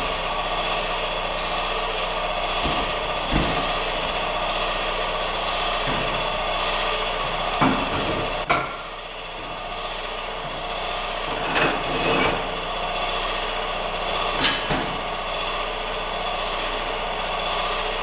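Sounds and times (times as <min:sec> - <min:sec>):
air compressor running: 0:00.0 - 0:18.0
tools knocking on tire: 0:02.6 - 0:03.8, 0:07.6 - 0:08.9.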